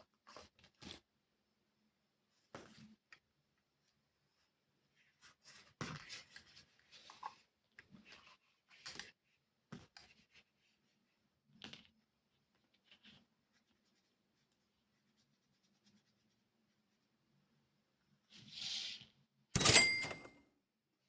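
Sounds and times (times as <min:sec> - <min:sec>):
cloth wiping desk items: 0:12.4 - 0:17.3.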